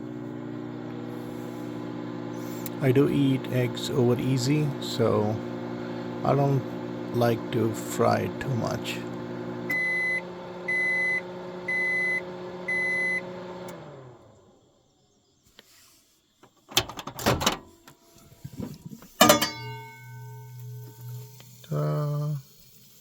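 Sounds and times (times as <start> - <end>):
microwave oven humming: 0.0 - 14.7, 19.2 - 23.0
microwave beeping: 1.9 - 14.2, 19.2 - 21.8.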